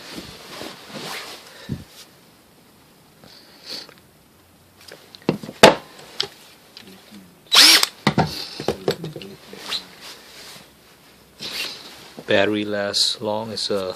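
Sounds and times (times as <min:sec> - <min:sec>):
cordless tool motor spinning up: 0:07.5 - 0:07.9.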